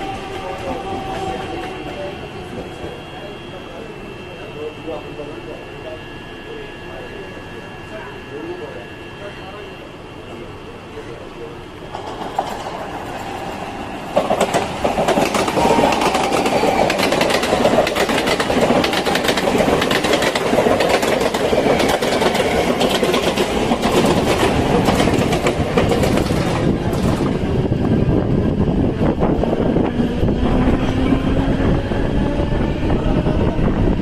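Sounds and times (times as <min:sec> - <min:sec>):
vehicle rattling and rushing: 0:17.1 - 0:27.4.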